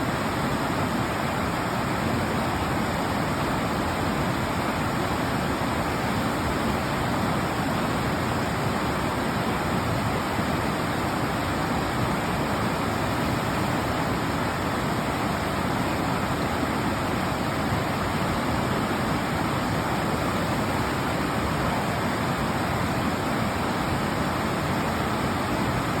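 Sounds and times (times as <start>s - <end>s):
river rushing over rocks: 0.0s - 26.0s.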